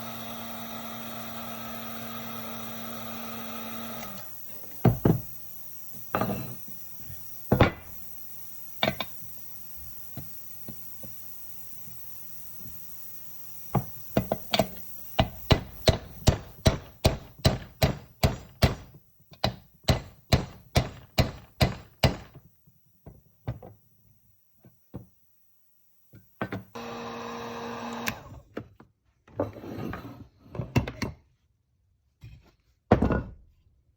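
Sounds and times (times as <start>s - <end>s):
steady electric hum: 3.4s - 16.6s.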